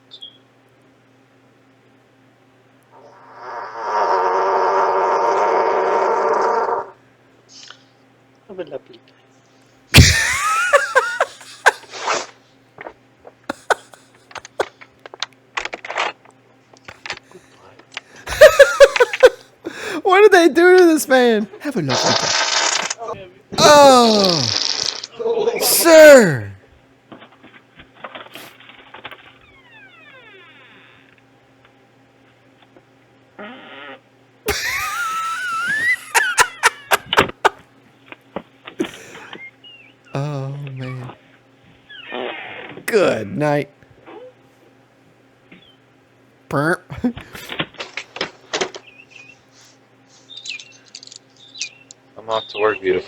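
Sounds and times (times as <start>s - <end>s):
loud fart: 10.0s - 10.4s, 23.6s - 25.1s, 33.4s - 34.0s.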